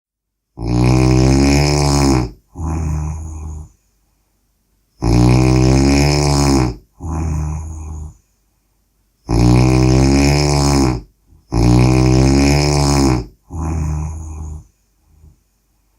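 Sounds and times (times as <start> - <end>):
person snoring: 0.6 - 3.8, 5.0 - 8.2, 9.3 - 15.4.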